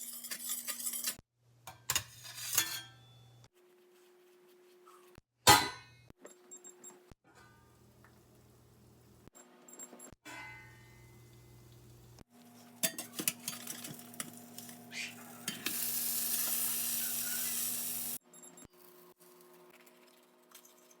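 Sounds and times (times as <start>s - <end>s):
pan and utensil clatter: 0.0s - 1.2s, 12.6s - 18.2s
food sizzling in hot pan: 14.0s - 18.2s.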